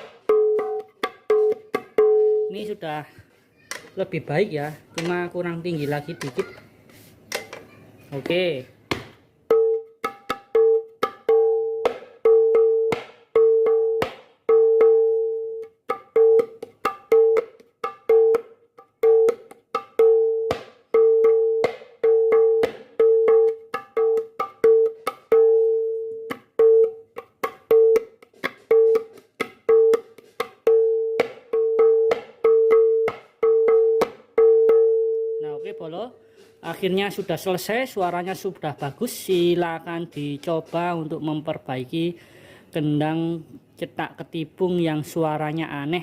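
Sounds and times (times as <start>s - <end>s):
hand drum strokes and slaps: 0.0s - 2.5s, 9.5s - 15.1s, 15.9s - 34.8s.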